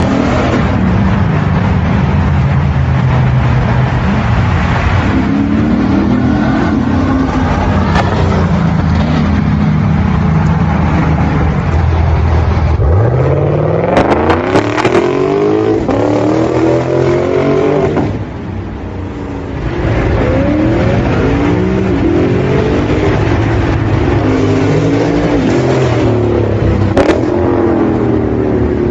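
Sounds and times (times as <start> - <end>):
car engine revving: 0.0 - 28.9.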